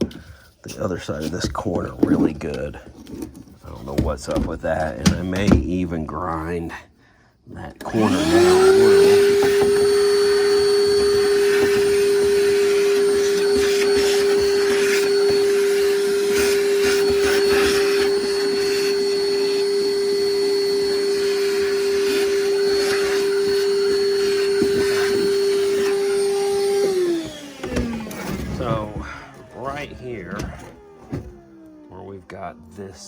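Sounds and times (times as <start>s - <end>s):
vacuum cleaner running: 7.5s - 33.0s.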